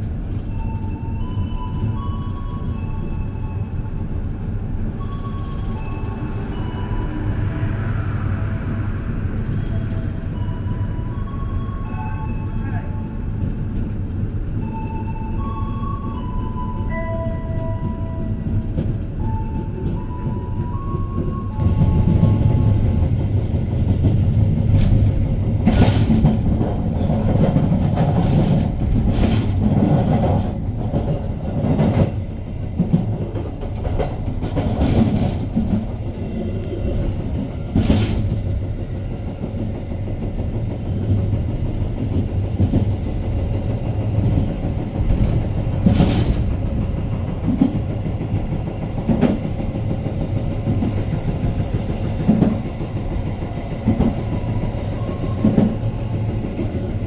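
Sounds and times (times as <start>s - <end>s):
train coach rumble: 0.0s - 57.0s
wheels clacking on track: 21.1s - 57.0s.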